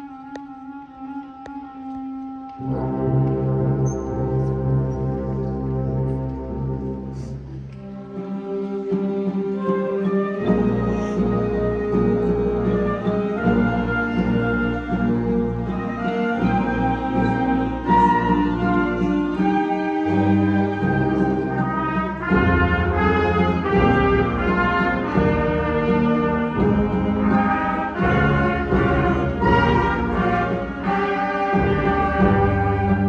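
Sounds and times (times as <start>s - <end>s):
ensemble with brass melody: 0.0s - 33.0s.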